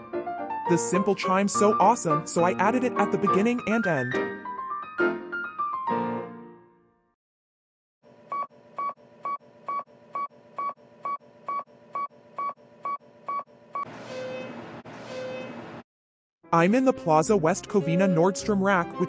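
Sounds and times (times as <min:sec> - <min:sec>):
elevator signal beeping: 0:08.3 - 0:15.6.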